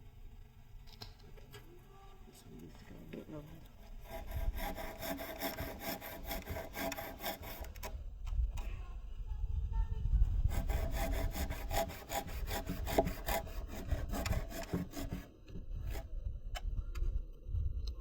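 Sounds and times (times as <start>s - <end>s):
wood being sawn by hand: 3.7s - 7.9s, 10.4s - 16.1s.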